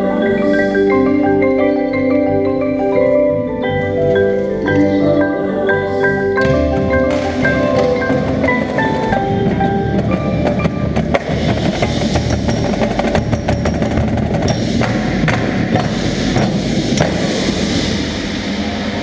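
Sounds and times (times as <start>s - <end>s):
xylophone notes: 0.0s - 14.8s
low sustained backing: 0.0s - 19.0s
dry percussion strikes: 6.4s - 19.0s.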